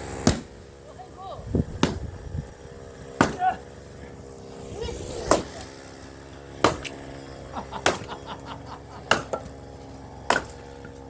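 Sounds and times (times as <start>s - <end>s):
axe striking firewood: 0.2s - 0.5s, 1.8s - 2.1s, 3.2s - 3.5s, 6.6s - 7.0s, 7.8s - 8.1s, 9.1s - 9.5s, 10.3s - 10.7s.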